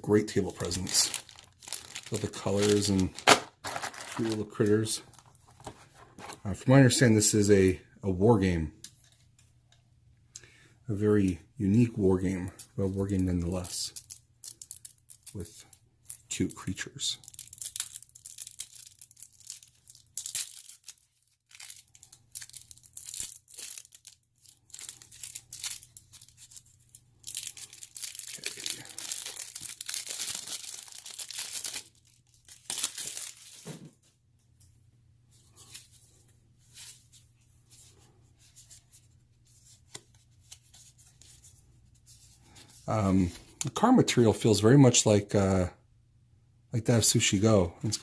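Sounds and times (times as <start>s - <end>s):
packaging tearing and crinkling: 0.3s - 5.4s, 17.2s - 33.8s.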